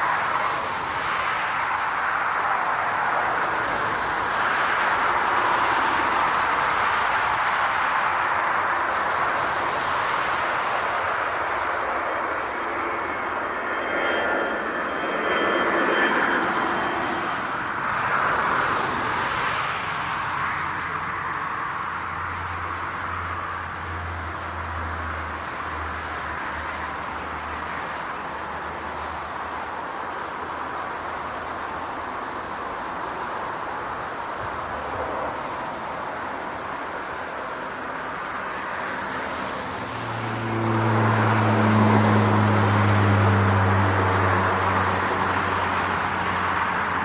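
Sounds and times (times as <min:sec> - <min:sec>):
aircraft jet engines roaring: 0:00.0 - 0:47.0
low engine drone: 0:01.7 - 0:19.0.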